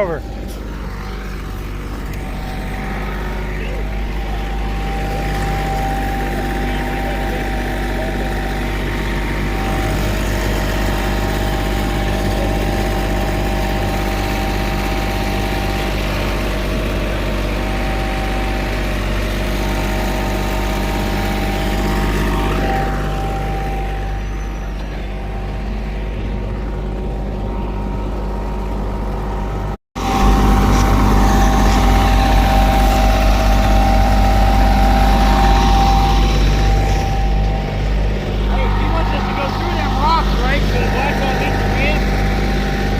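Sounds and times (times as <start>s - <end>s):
diesel engines droning: 0.0s - 42.9s.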